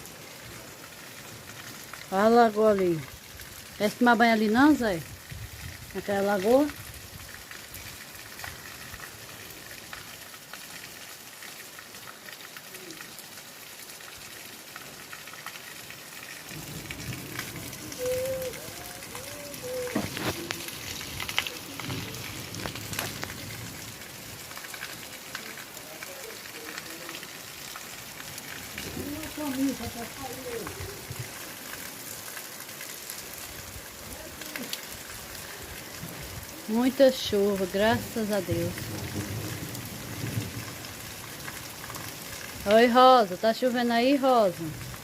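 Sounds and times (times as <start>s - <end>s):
drips and splashes: 0.0s - 45.0s
heavy rain: 0.0s - 45.0s
faint voices: 17.7s - 22.6s.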